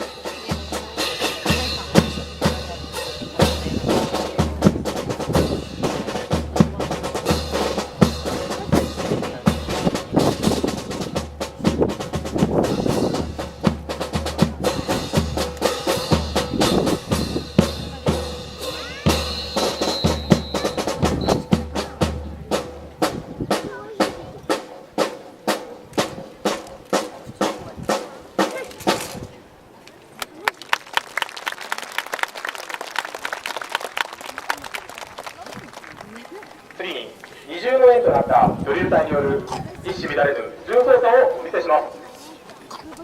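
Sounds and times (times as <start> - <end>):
bass drum thuds: 0.0 - 24.4
snare drum strokes: 0.0 - 29.3.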